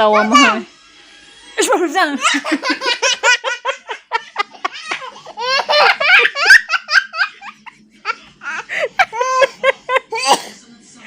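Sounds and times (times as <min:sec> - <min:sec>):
toddler laughing: 0:02.2 - 0:07.6, 0:08.4 - 0:10.3.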